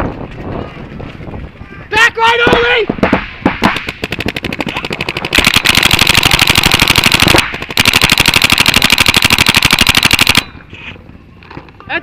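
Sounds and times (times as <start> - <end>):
paintball markers firing rapidly: 3.0 - 10.5.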